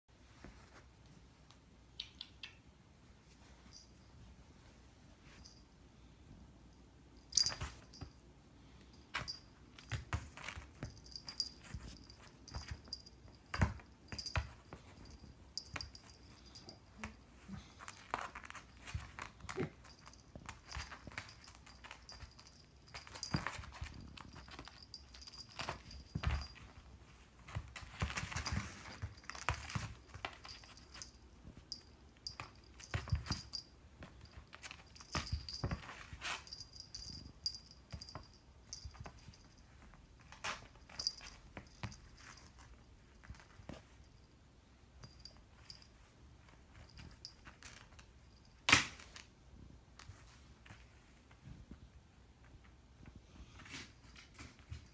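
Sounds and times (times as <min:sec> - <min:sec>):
kitten paws scrambling on floor: 0:08.8 - 0:44.2.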